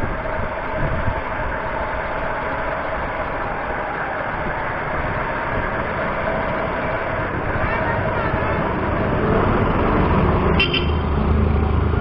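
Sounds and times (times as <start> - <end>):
wind on microphone: 0.0 - 2.0
bicycle tyres on road: 0.0 - 12.0.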